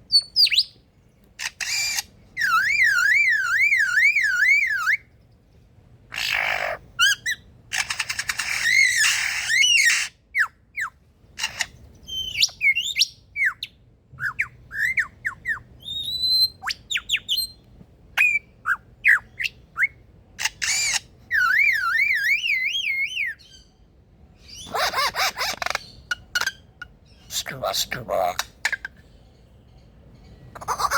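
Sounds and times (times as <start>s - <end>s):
lyrebird singing mimicry: 0.1s - 5.1s, 6.1s - 30.9s.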